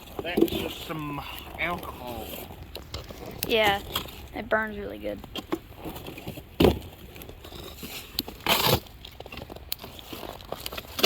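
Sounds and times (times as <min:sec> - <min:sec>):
campfire crackling: 0:00.0 - 0:11.0
loud crunch: 0:05.3 - 0:11.0.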